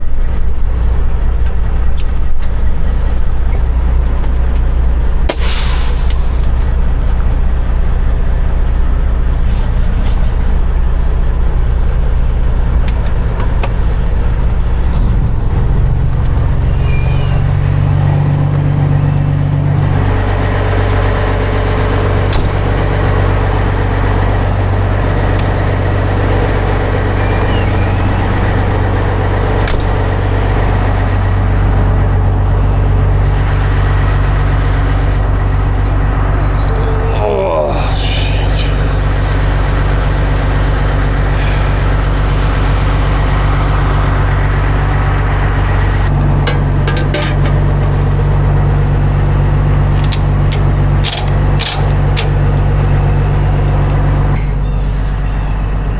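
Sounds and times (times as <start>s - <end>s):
truck diesel engine running: 0.0s - 55.9s
air hiss: 5.3s - 6.5s.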